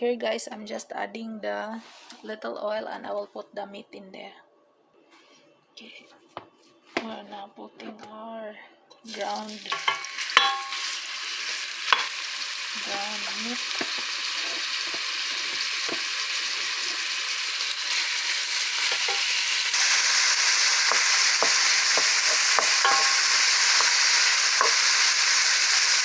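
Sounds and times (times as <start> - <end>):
meat sizzling in a pan: 9.1 - 26.0
light stirring knocks: 9.7 - 10.8, 20.9 - 23.9.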